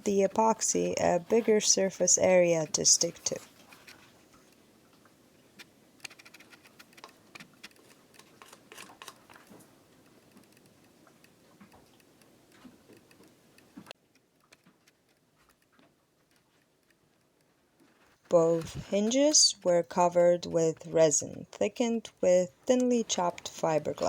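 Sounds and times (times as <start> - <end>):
small clicks on plastic parts: 5.6 - 17.5
tiny ticks: 6.0 - 17.5
room noise: 17.6 - 24.0.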